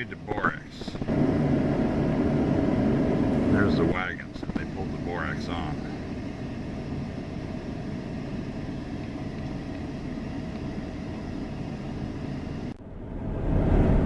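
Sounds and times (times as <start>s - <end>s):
low road rumble: 0.0s - 14.0s.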